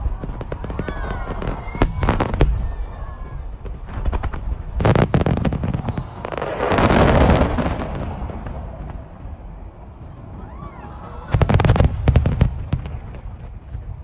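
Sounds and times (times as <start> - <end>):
firework crackling shower: 0.0 - 14.0
firework bangs and pops: 0.2 - 9.1.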